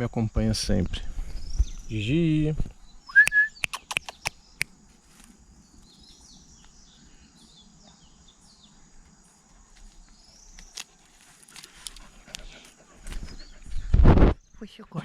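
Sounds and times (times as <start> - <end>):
high insect drone: 0.0 - 15.0
birds chirping: 1.2 - 15.0
sharp click: 3.2 - 4.7.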